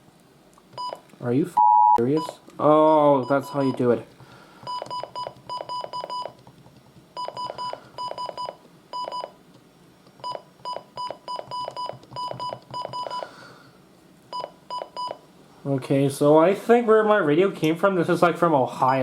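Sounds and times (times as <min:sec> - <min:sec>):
short high keypress beeps: 0:04.7 - 0:06.4, 0:10.2 - 0:13.3.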